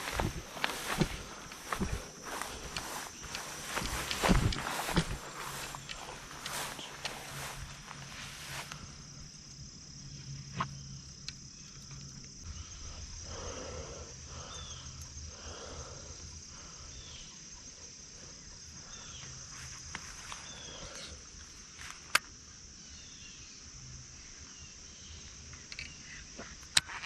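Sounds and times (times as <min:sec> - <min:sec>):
rustling footsteps: 0:00.0 - 0:08.9
crickets chirping: 0:00.0 - 0:27.0.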